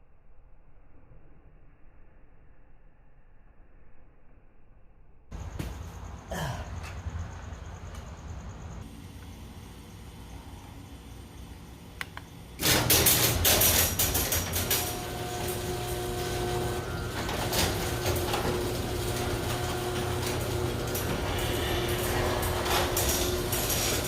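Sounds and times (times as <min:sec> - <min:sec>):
garage door motor hum: 0:07.2 - 0:24.0
garage door rattling and clanking: 0:12.6 - 0:24.0.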